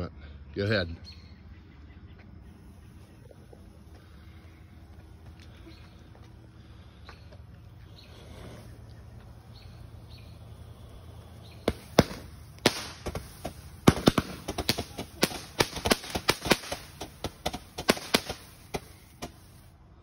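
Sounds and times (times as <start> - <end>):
firework fountain cracks and pops: 9.4 - 19.7.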